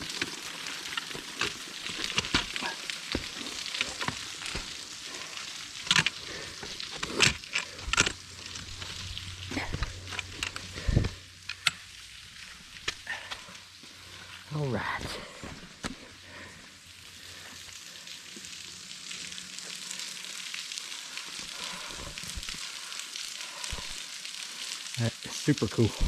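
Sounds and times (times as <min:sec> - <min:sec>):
footsteps on rocky leafy trail: 0:00.0 - 0:16.2
steady hiss: 0:00.0 - 0:26.0.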